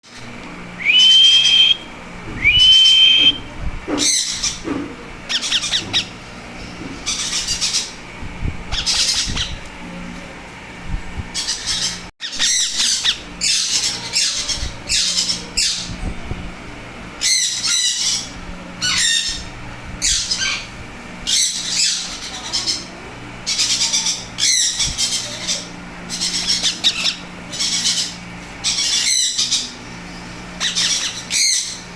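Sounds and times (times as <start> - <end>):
parakeets squawking: 0.8 - 3.4, 4.0 - 4.7, 5.3 - 6.3, 7.0 - 8.0, 8.7 - 9.6, 11.4 - 16.0, 17.2 - 29.9, 30.6 - 31.9
whistled bird calls: 0.8 - 4.5.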